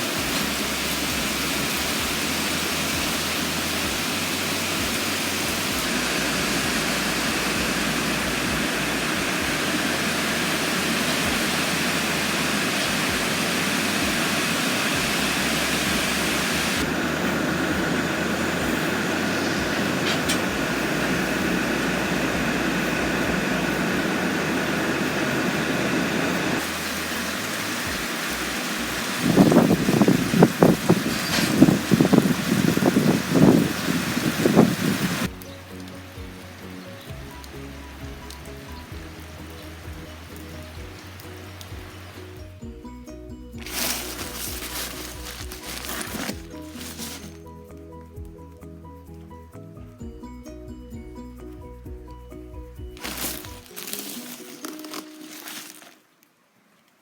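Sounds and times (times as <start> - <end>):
heavy rain: 0.0 - 42.5.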